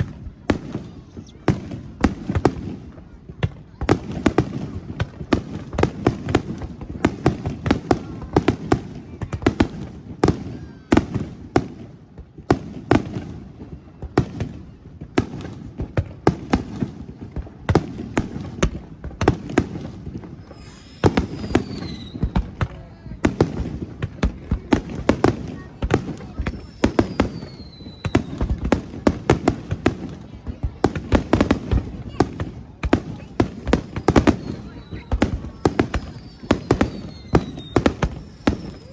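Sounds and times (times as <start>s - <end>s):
fireworks bursts and bangs: 0.0s - 38.9s
whistling firework shell: 20.4s - 22.6s, 26.2s - 28.6s, 33.8s - 38.9s.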